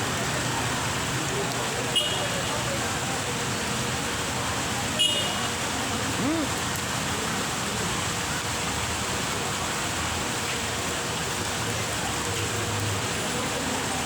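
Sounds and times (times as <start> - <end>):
rain falling steadily: 0.0 - 14.0.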